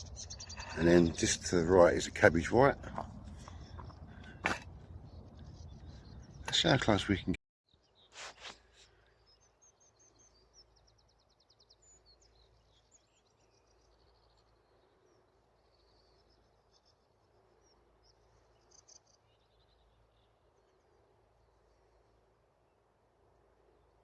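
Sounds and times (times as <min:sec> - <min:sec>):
small birds chirping and trilling: 0:00.0 - 0:22.8.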